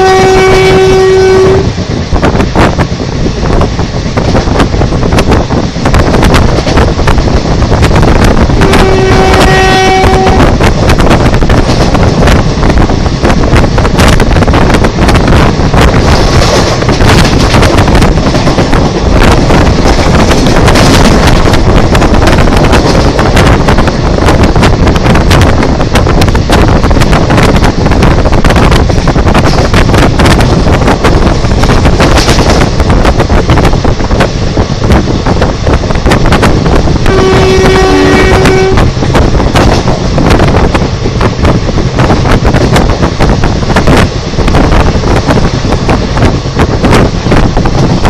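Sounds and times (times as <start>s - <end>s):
train horn blast: 0.0s - 1.7s, 8.6s - 10.7s, 37.0s - 39.0s
train wheels rumbling on rails: 0.0s - 48.0s
wind buffeting microphone: 0.0s - 48.0s.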